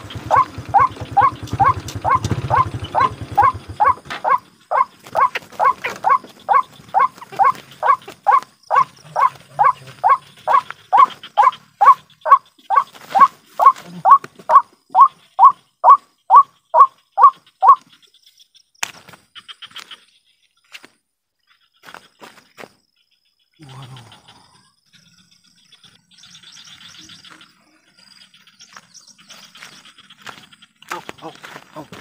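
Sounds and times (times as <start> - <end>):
waterhen calling: 0.0 - 17.9.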